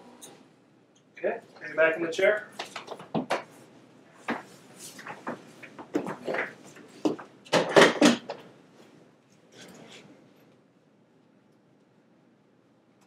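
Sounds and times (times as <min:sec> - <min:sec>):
knocks and clunks: 0:05.2 - 0:08.4.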